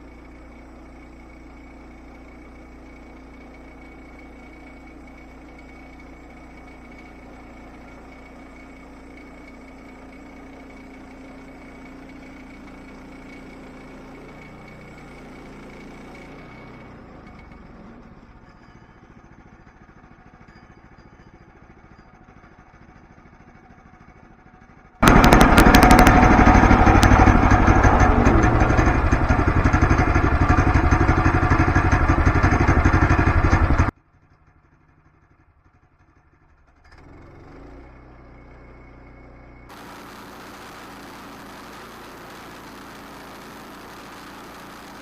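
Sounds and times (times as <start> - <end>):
sawmill engine running under load: 0.0 - 18.5, 25.0 - 33.9, 39.7 - 45.0
faint engine hum: 37.5 - 45.0.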